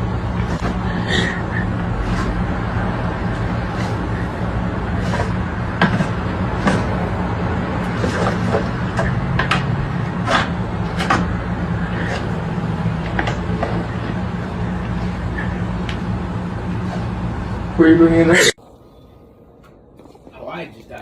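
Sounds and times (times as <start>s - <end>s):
steady low hum: 0.0s - 21.0s
sharp clicks and knocks: 8.0s - 11.3s.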